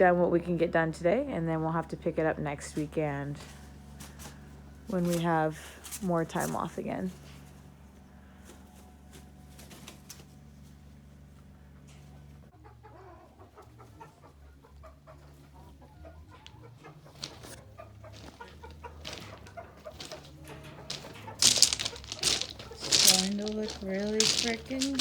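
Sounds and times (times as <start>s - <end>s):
hens clucking: 16.4s - 25.0s.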